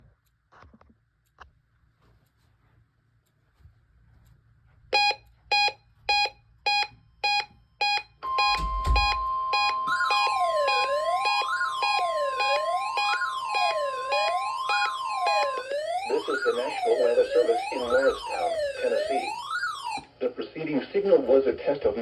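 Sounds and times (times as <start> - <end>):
short beeps: 5.0 - 16.8
wailing siren: 8.2 - 20.2
steady alert tone: 8.4 - 20.0.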